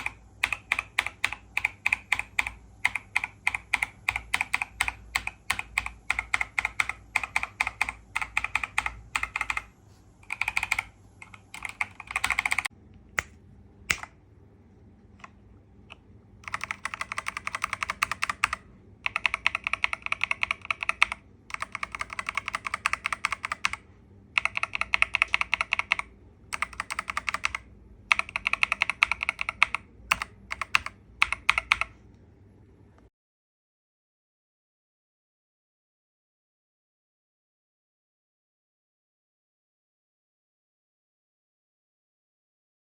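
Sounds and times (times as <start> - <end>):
mechanical keyboard typing: 0.0 - 12.7, 13.9 - 14.2, 15.2 - 32.0.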